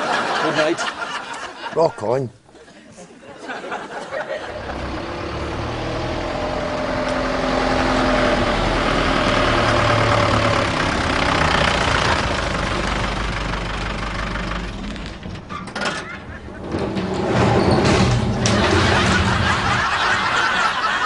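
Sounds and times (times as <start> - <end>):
vehicle engine running: 4.5 - 15.2.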